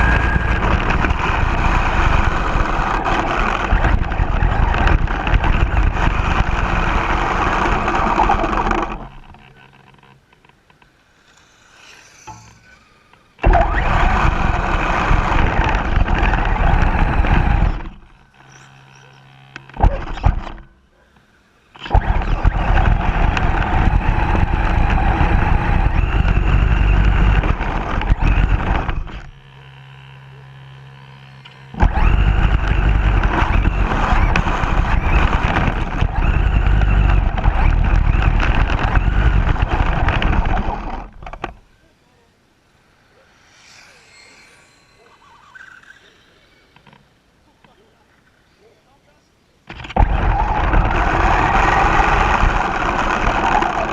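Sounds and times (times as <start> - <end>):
rc car motor rumbling: 0.0 - 42.0, 42.6 - 48.7, 49.6 - 53.9
faint low hum: 28.4 - 53.9.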